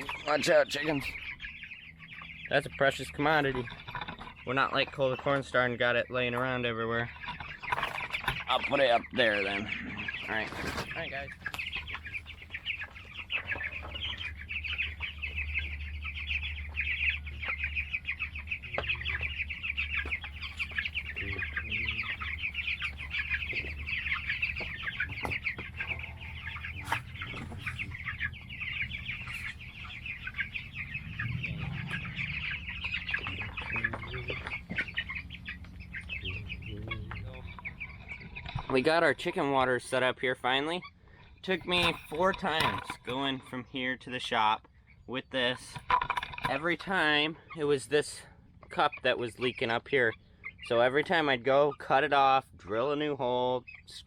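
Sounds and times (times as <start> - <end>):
chickens calling: 0.0 - 54.0
low hum: 14.1 - 38.4.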